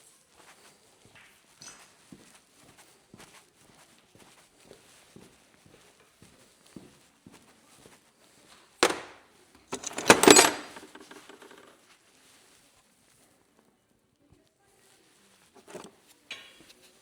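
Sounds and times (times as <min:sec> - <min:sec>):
metal clatter with ringing: 0:09.7 - 0:11.6.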